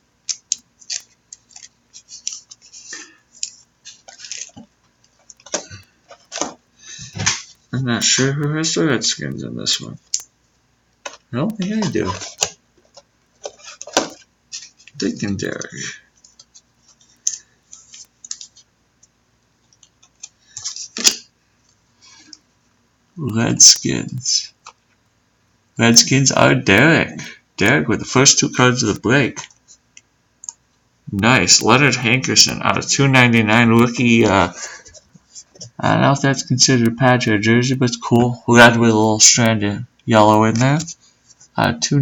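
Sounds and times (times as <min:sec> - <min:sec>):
cards clicking and rustling: 0:00.2 - 0:08.1, 0:11.0 - 0:18.7, 0:19.7 - 0:21.3
cards scraping: 0:00.3 - 0:08.2, 0:11.0 - 0:18.7, 0:19.8 - 0:21.3.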